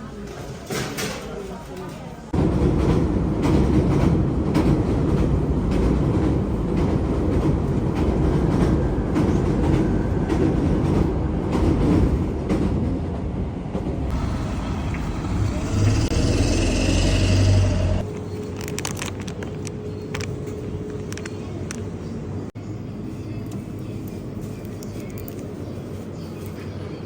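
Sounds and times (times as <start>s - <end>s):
train rumbling on rails: 2.2s - 27.0s
wheels clicking over rail joints: 14.1s - 21.8s.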